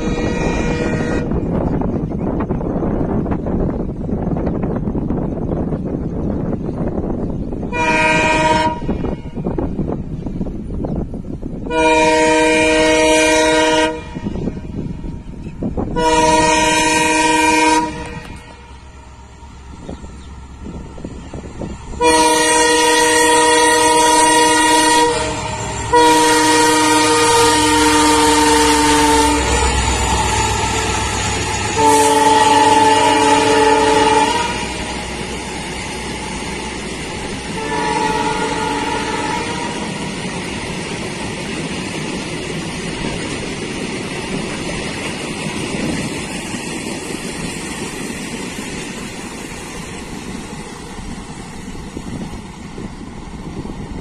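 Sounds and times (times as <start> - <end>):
train horn blasts: 0.0 - 1.8, 7.6 - 9.7, 11.6 - 15.1, 15.8 - 19.0, 21.9 - 35.5, 37.2 - 40.1
train wheels rumbling and clattering: 0.0 - 54.0.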